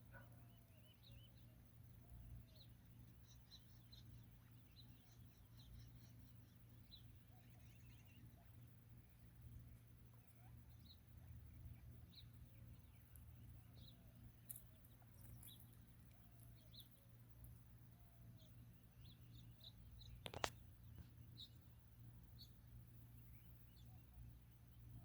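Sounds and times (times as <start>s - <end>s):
faint bird chirps: 0.0s - 25.0s
low steady hum: 0.0s - 25.0s
sharp click: 20.1s - 20.6s.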